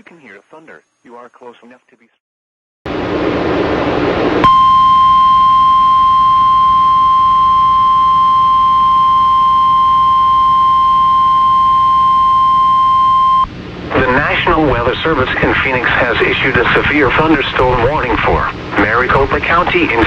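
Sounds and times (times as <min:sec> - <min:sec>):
steady alert tone: 0:04.4 - 0:17.3.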